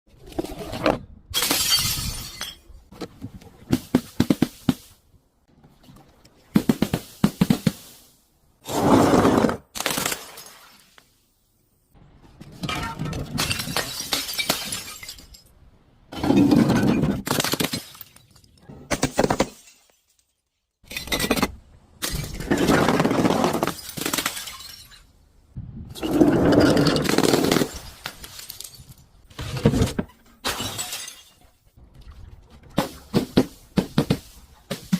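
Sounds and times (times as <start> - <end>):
glass bottles being crushed: 1.4 - 2.8, 12.6 - 15.5, 23.7 - 25.1, 30.4 - 31.5.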